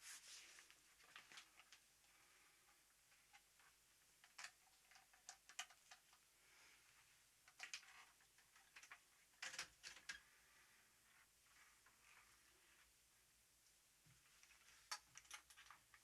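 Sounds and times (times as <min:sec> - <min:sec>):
faint clicks and taps: 0:00.6 - 0:06.3.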